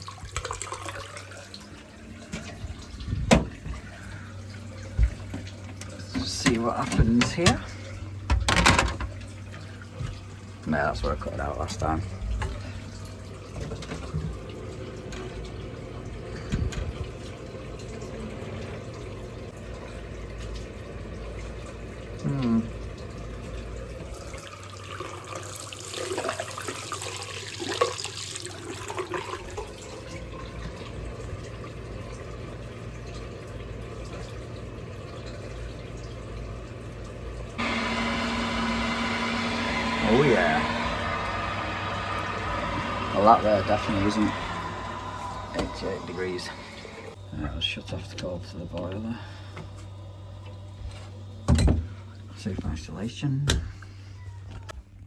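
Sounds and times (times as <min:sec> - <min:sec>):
tap water running into sink: 0:00.0 - 0:47.2
louder steady hum: 0:37.5 - 0:50.8
steady low hum: 0:39.5 - 0:53.9.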